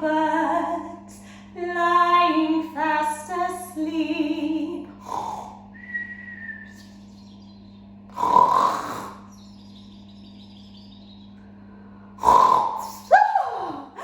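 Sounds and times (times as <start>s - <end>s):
person pretend snoring: 5.0s - 5.6s, 8.1s - 9.3s, 12.2s - 13.1s.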